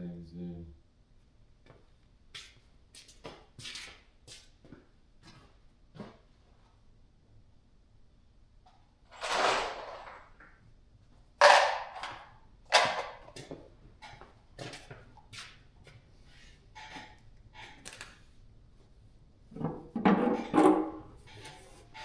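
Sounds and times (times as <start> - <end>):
metal parts clanking: 9.1 - 10.2.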